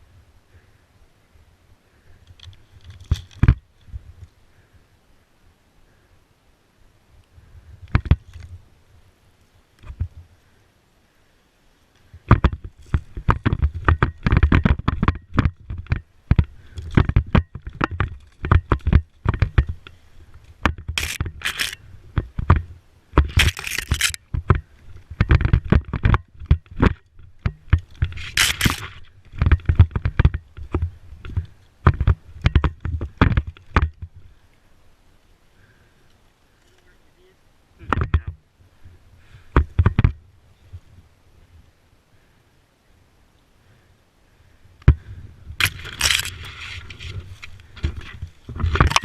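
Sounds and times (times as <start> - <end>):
handling noise at microphone: 2.3 - 4.3, 7.8 - 8.7, 9.8 - 10.3, 12.2 - 34.3, 37.8 - 38.4, 39.4 - 41.0, 44.8 - 49.0.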